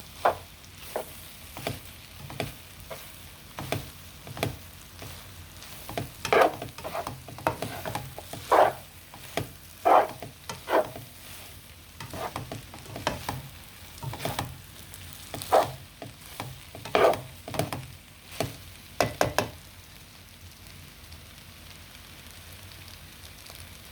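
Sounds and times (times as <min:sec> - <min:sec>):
utensil scraping a pan: 0:00.0 - 0:14.6, 0:15.2 - 0:19.5
noodles sizzling: 0:00.0 - 0:21.2.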